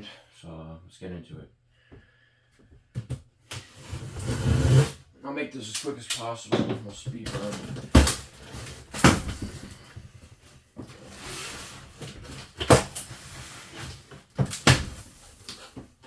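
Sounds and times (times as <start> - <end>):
cardboard flaps rustling: 7.1 - 16.0
cardboard box knocks and thumps: 7.3 - 9.8.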